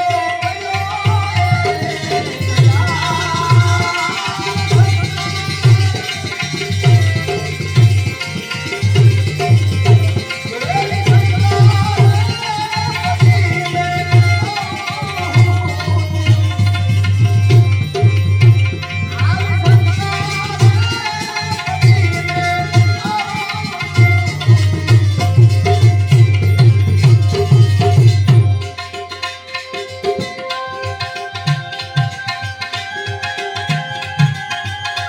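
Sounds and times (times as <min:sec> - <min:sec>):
hand drums playing rhythm: 0:00.0 - 0:35.0
sliding melody instrument: 0:21.8 - 0:35.0.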